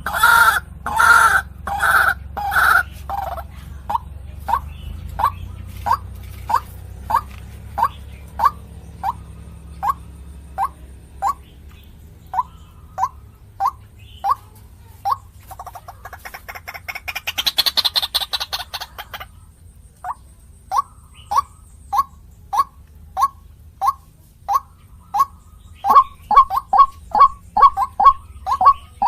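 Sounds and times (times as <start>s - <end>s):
waterhen calling: 0.0s - 11.6s, 12.2s - 19.4s, 20.0s - 29.0s.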